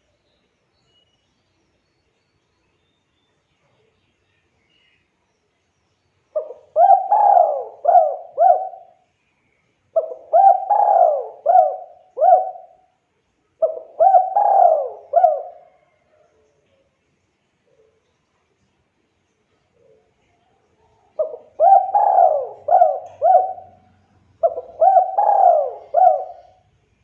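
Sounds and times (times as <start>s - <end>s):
dove cooing: 6.4s - 9.0s, 10.0s - 12.8s, 13.6s - 16.0s, 21.1s - 26.7s.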